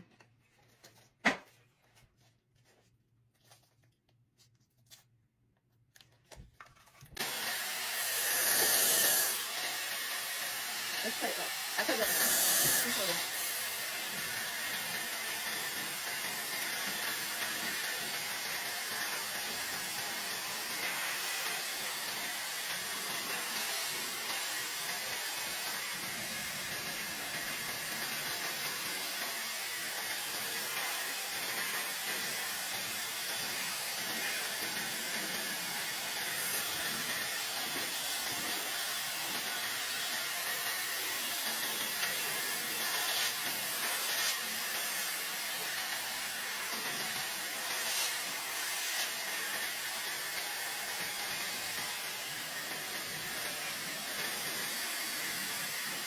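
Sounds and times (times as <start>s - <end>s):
hair dryer running: 7.2s - 56.0s.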